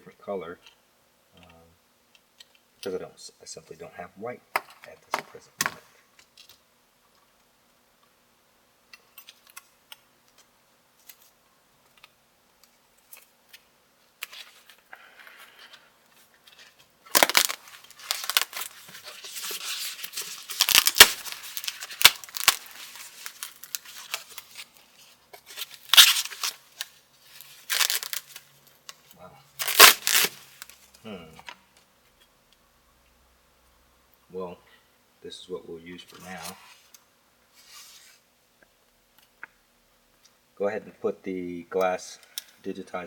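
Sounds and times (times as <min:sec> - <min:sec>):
thin plastic crinkling and tearing: 0:10.3 - 0:31.0.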